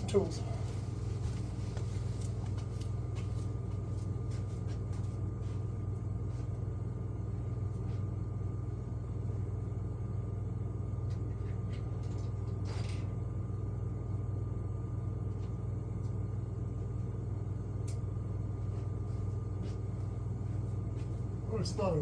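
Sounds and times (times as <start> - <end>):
low mechanical hum: 0.0 - 22.0.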